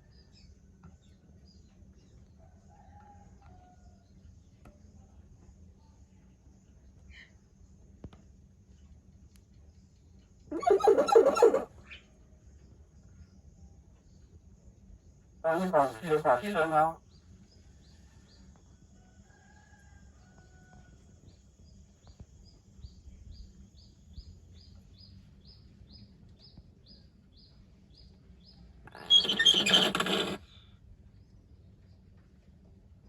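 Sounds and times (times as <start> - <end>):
high bird chirps: 10.5 - 11.7
soft whistles: 10.5 - 11.7.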